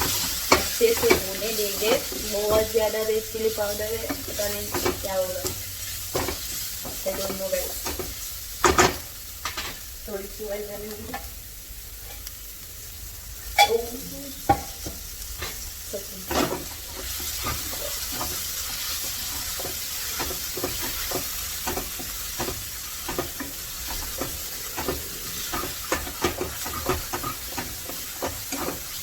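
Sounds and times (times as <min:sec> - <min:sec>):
masala sizzling in oil: 0:00.0 - 0:29.0
spoon scraping in a pan: 0:13.5 - 0:29.0.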